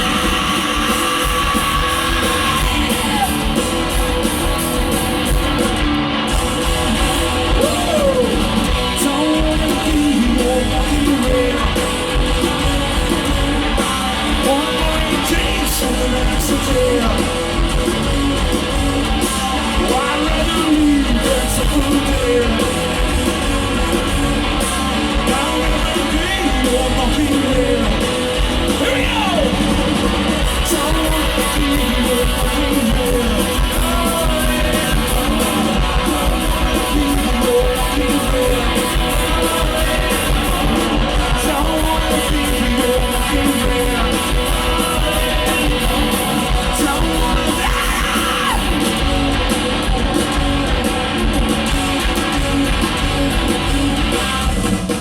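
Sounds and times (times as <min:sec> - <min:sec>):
person yelling singing: 0:00.0 - 0:03.7, 0:07.5 - 0:11.8, 0:13.9 - 0:17.5, 0:19.4 - 0:22.7, 0:25.2 - 0:28.1, 0:28.7 - 0:29.7, 0:30.5 - 0:48.8
distorted electric guitars: 0:00.0 - 0:55.0
drums: 0:00.0 - 0:55.0.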